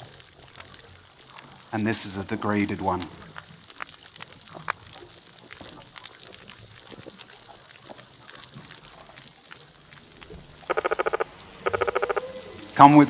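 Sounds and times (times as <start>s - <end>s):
steady hiss: 0.0s - 3.3s, 8.5s - 13.0s
faint underwater clicks and crackle: 0.0s - 13.0s.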